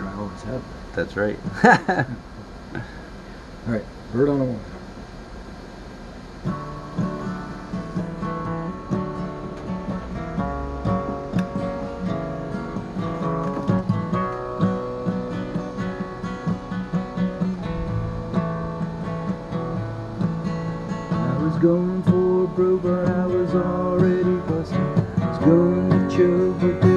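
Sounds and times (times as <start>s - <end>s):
acoustic guitar strumming chords: 6.4s - 26.9s.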